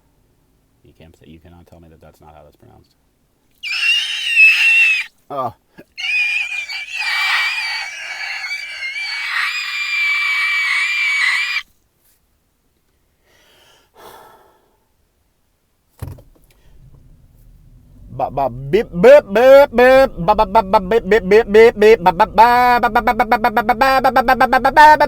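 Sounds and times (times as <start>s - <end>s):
man screeching in falsetto: 3.6s - 5.1s, 5.8s - 11.6s.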